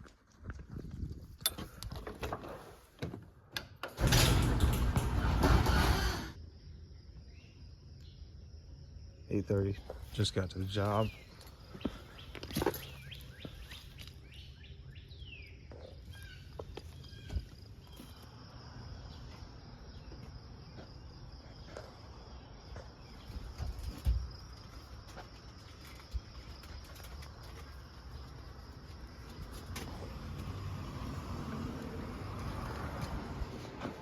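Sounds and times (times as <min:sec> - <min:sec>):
bird calls: 0:10.8 - 0:18.3.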